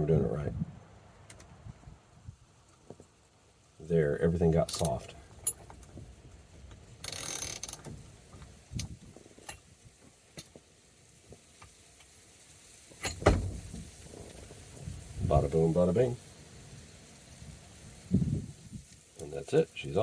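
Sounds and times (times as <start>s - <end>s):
ratchet clicks: 7.0s - 7.9s
ratchet rasping: 7.0s - 7.9s
sharp knock: 13.0s - 13.8s.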